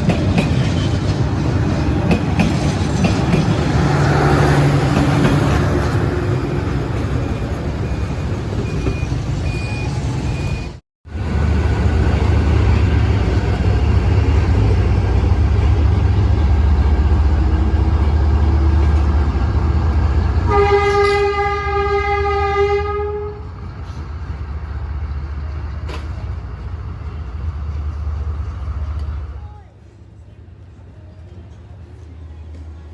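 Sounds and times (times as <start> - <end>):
diesel locomotive engine rumbling: 0.0 - 32.9
locomotive horn blast: 20.4 - 23.6.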